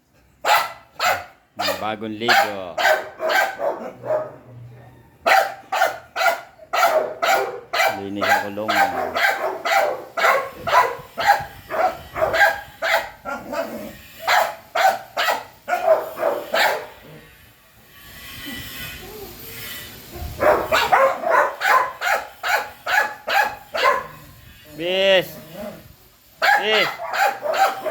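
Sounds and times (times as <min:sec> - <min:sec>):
dog barking: 0:00.4 - 0:04.5, 0:05.2 - 0:17.1, 0:20.4 - 0:24.2, 0:26.4 - 0:27.9.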